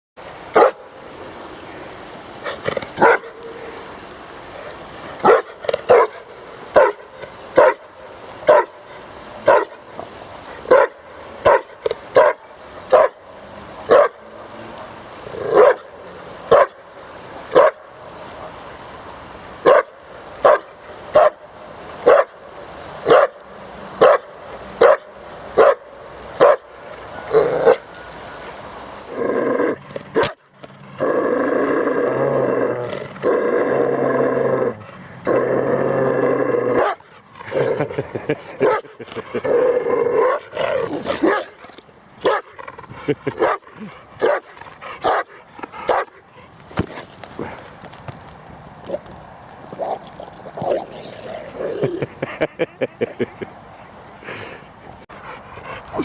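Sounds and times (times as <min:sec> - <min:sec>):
dog barking: 0:00.6 - 0:00.8, 0:03.0 - 0:03.3, 0:05.2 - 0:06.2, 0:06.8 - 0:07.0, 0:07.6 - 0:07.8, 0:08.5 - 0:08.8, 0:09.5 - 0:09.7, 0:10.7 - 0:13.2, 0:13.9 - 0:14.2, 0:15.5 - 0:15.9, 0:16.5 - 0:16.8, 0:17.5 - 0:17.8, 0:19.7 - 0:21.4, 0:22.0 - 0:22.3, 0:23.1 - 0:23.4, 0:24.0 - 0:25.8, 0:26.4 - 0:26.6, 0:42.2 - 0:42.5, 0:44.2 - 0:44.4.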